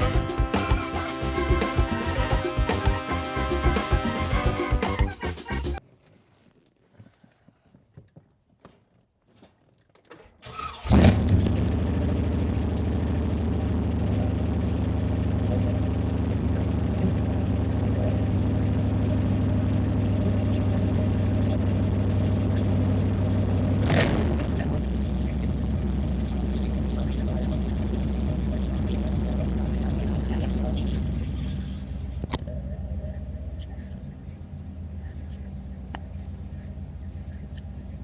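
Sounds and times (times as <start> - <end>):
car engine cranking and idling: 10.4 - 38.0.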